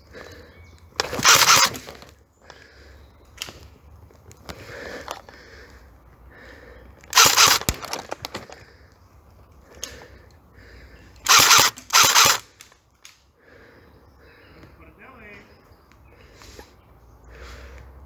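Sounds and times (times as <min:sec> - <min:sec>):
electric rifle firing bursts: 0:01.0 - 0:02.0, 0:07.1 - 0:08.6, 0:11.2 - 0:12.6.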